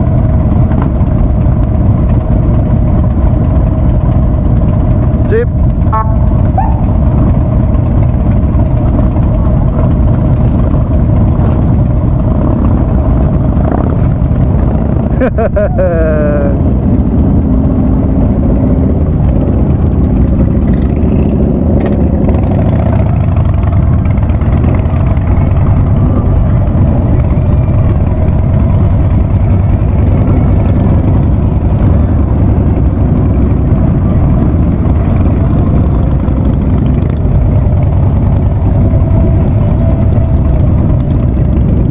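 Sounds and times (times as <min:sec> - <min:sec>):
motorcycle engine rumbling: 0:00.0 - 0:41.9
short falling tone: 0:05.9 - 0:07.0.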